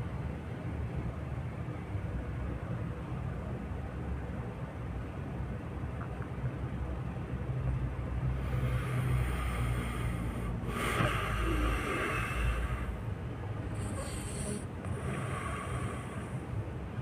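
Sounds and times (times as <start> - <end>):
person snoring: 8.5 - 13.0, 13.7 - 16.3.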